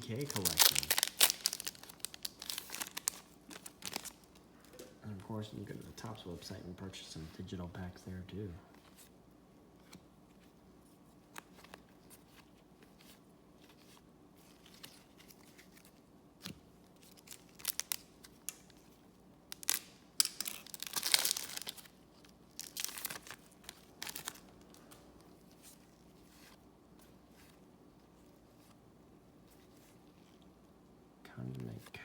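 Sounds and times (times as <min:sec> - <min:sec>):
wrapper tearing and crinkling: 0:00.0 - 0:04.4, 0:17.0 - 0:18.8, 0:19.5 - 0:25.8.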